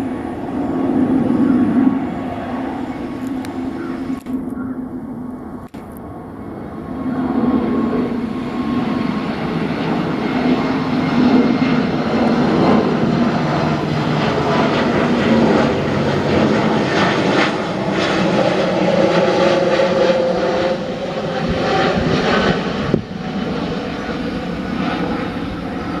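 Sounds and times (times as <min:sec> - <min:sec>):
jet engines roaring: 0:00.0 - 0:26.0.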